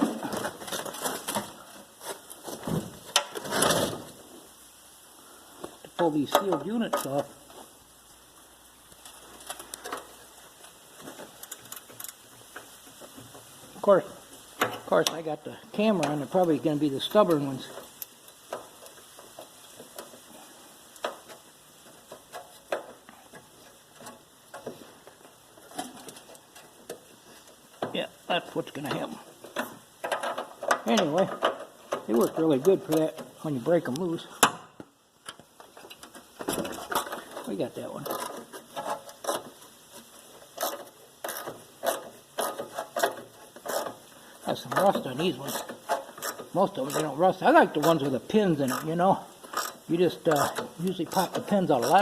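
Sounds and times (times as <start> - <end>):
ratcheting wrench clicking: 40.4 - 44.1, 45.5 - 47.1, 48.7 - 52.0.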